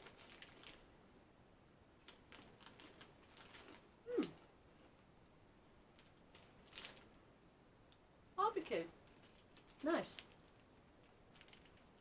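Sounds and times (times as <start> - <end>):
cracker packet crinkling: 0.0 - 0.9, 2.0 - 4.4, 6.0 - 7.1, 9.0 - 12.0.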